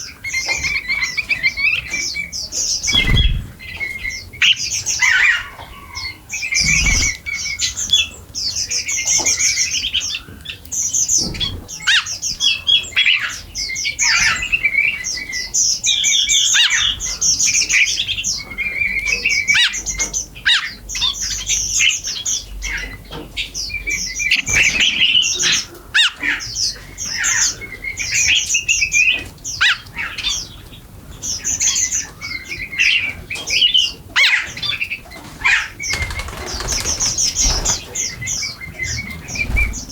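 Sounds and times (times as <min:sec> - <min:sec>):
small birds chirping: 0:00.0 - 0:39.9
low thumps: 0:02.9 - 0:03.8.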